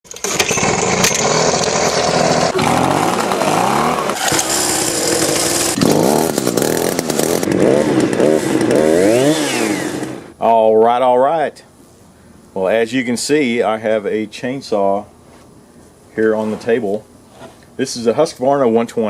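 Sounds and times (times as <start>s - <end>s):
chainsaw engine revving: 0.1s - 10.3s.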